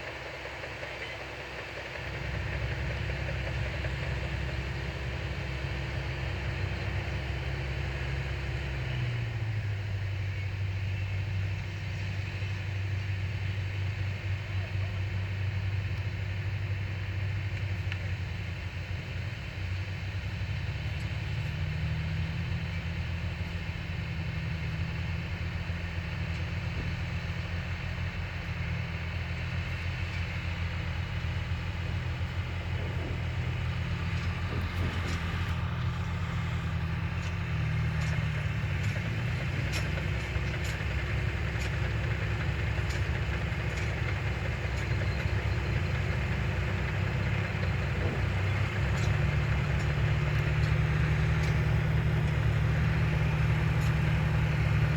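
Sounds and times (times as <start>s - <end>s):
heavy machinery engine humming: 0.0s - 54.9s
faint clicks: 36.8s - 54.9s.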